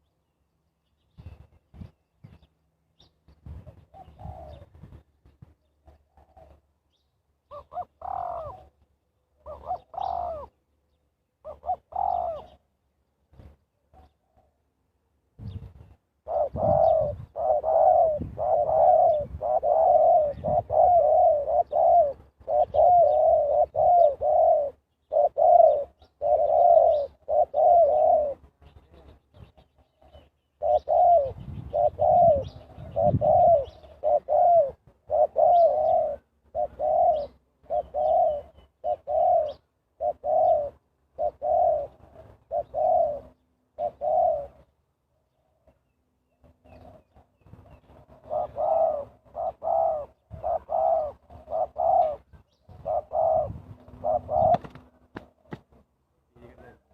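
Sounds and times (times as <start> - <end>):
dove cooing: 3.4 - 10.7, 11.4 - 14.8, 15.4 - 56.9.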